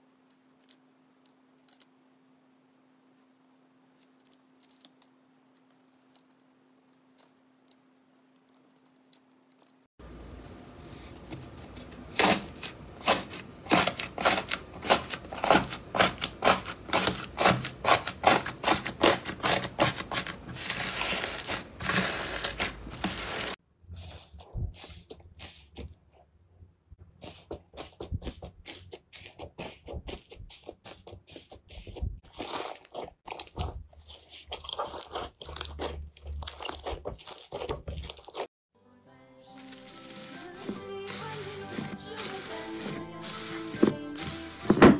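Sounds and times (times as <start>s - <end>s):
low steady hum: 0.0s - 17.3s.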